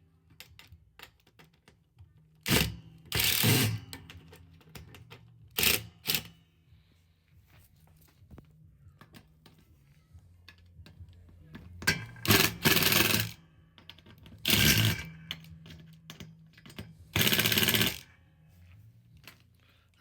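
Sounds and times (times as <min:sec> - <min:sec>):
clicks and knocks of parts handled: 0:00.2 - 0:02.0, 0:10.4 - 0:12.4, 0:13.7 - 0:14.6.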